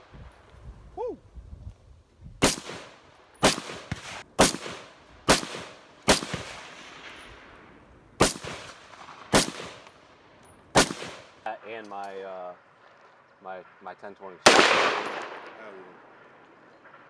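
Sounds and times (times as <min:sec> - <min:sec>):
gunshots with reverberation: 0:02.4 - 0:11.5, 0:14.4 - 0:16.4.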